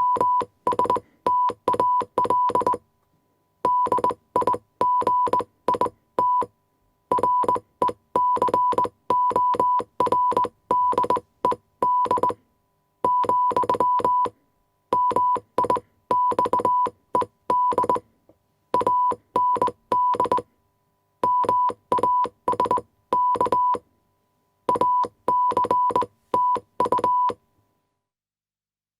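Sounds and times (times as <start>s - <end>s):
morse code beeps: 0.0s - 2.8s, 3.7s - 6.5s, 7.1s - 12.4s, 13.1s - 18.0s, 18.8s - 20.4s, 21.2s - 23.8s, 24.7s - 27.4s.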